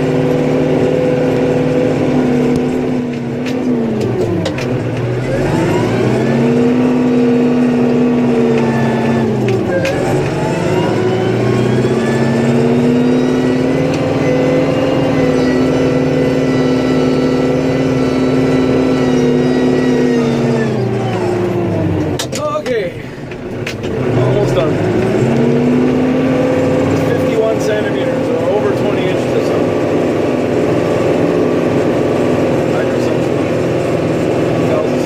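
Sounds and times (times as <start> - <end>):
vehicle engine running: 0.0 - 35.0.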